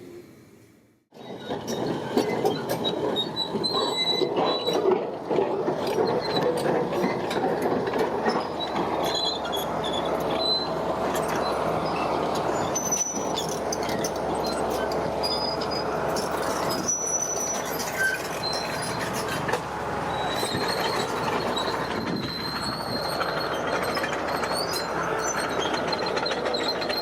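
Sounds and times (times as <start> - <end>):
heavy machinery engine din: 1.1 - 27.0
short high squeals: 8.4 - 19.4, 20.1 - 27.0.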